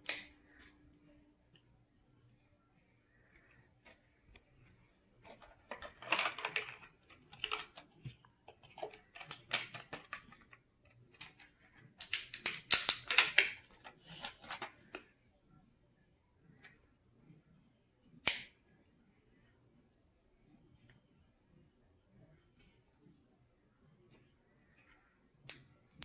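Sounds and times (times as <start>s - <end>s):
packaging rustling: 5.2s - 14.9s.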